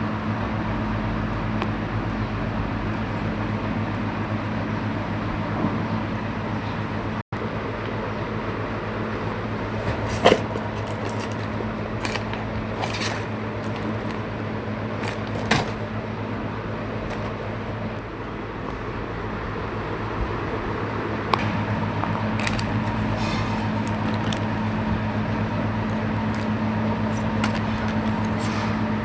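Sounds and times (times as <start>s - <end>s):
electrical fan hum: 0.0s - 29.0s
packaging crinkling: 9.2s - 17.9s, 22.3s - 28.8s.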